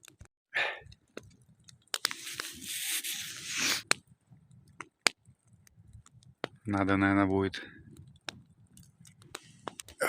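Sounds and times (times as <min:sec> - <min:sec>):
campfire crackling and popping: 0:00.0 - 0:10.0
hissing noise: 0:02.1 - 0:04.0.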